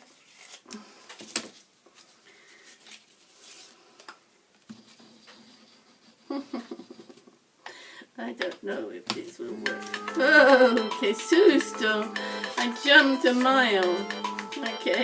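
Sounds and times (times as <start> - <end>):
paper handling: 0.0 - 4.1.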